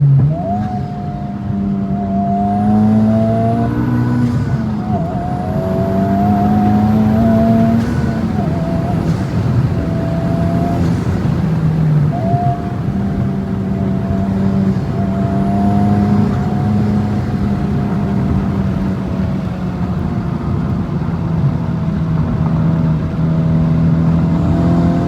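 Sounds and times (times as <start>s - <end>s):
car engine accelerating: 0.0s - 25.0s
high turbo whistle: 0.4s - 19.5s.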